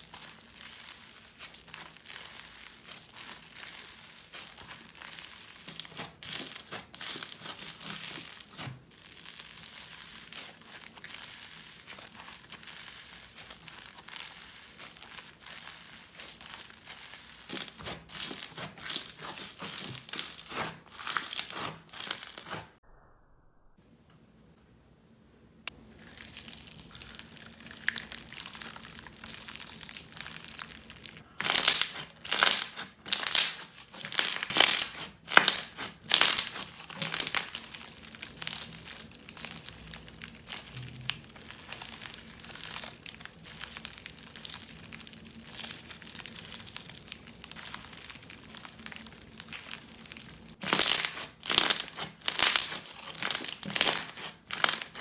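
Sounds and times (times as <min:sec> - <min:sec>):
slime squished by hand: 0:00.0 - 0:22.8, 0:25.7 - 0:55.0.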